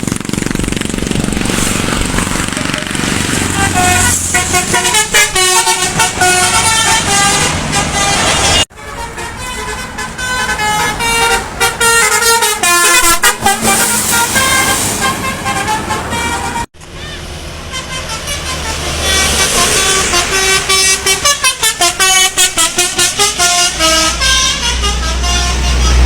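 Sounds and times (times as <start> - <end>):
bus and traffic rumble: 0.0 - 26.0
multi-tone bus air horn tune: 2.4 - 26.0.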